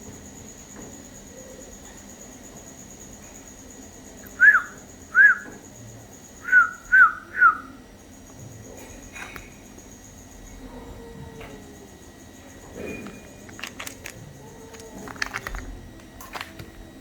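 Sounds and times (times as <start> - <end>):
bird calls: 4.2 - 5.6, 6.4 - 7.8.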